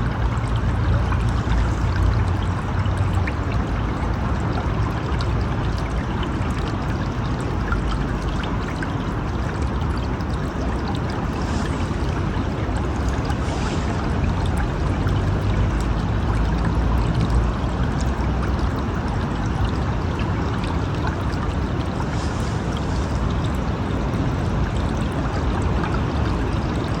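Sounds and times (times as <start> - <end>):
river water rushing: 8.7 - 27.0.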